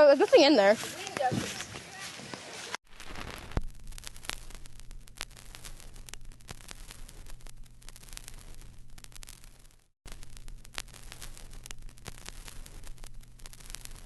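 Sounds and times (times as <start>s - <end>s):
steady low hum: 2.9s - 14.0s.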